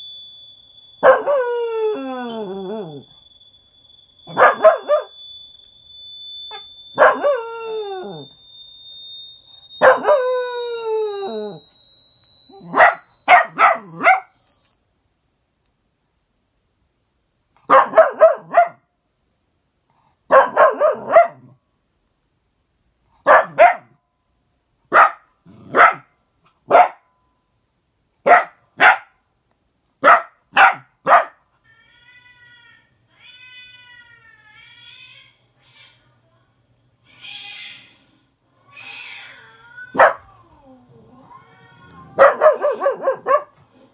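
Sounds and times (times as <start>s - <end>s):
dog barking: 4.3s - 5.1s, 7.0s - 7.4s, 9.8s - 10.2s, 12.7s - 14.4s, 17.7s - 18.8s, 20.3s - 21.5s, 23.2s - 24.0s, 24.9s - 26.1s, 26.7s - 27.1s, 28.2s - 29.2s, 30.0s - 31.4s, 40.0s - 40.3s, 42.1s - 43.6s
dog whining: 6.4s - 14.8s, 38.8s - 43.9s.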